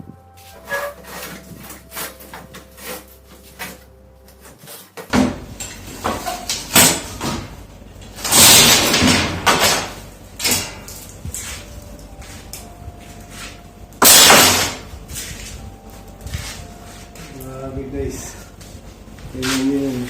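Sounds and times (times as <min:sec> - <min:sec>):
parts scraping: 0:00.3 - 0:07.3
parts knocking and clattering: 0:03.6 - 0:11.4.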